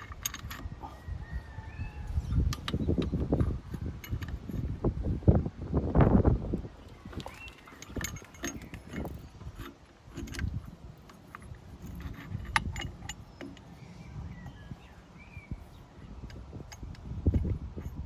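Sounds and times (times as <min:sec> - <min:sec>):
metallic clinks of hand tools: 0:00.0 - 0:01.0, 0:07.3 - 0:13.8.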